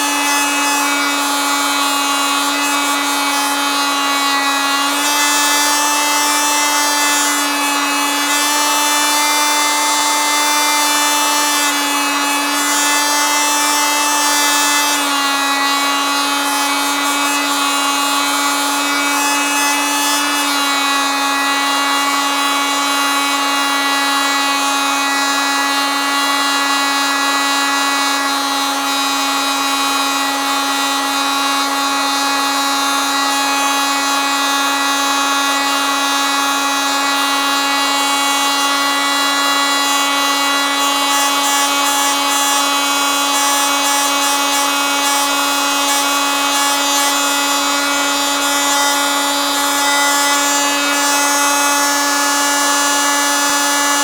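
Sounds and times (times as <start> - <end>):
oscillating multitool buzz: 29.8 - 54.0.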